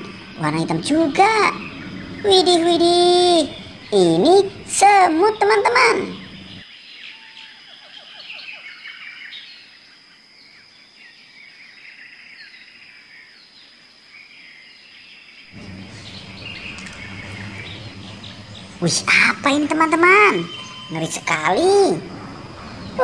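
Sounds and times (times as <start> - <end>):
low hum: 0.0 - 6.6, 15.5 - 23.0
small birds chirping: 0.0 - 23.0.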